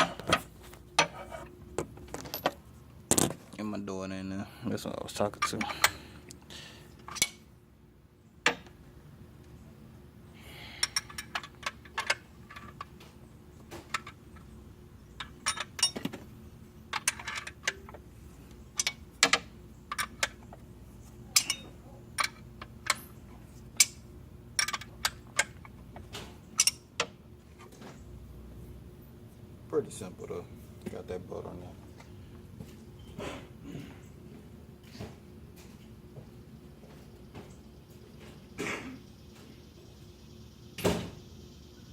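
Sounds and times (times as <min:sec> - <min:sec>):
faint steady hum: 0:00.0 - 0:41.9
wrench clicking on metal bolts: 0:15.2 - 0:16.1, 0:16.9 - 0:18.0, 0:18.7 - 0:20.5, 0:21.3 - 0:23.1, 0:23.8 - 0:24.0, 0:24.6 - 0:25.8, 0:26.5 - 0:27.1.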